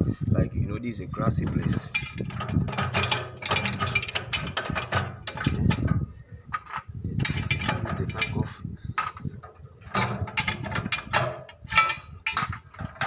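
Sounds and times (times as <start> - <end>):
hand tool clicking and rattling: 1.4 - 13.0.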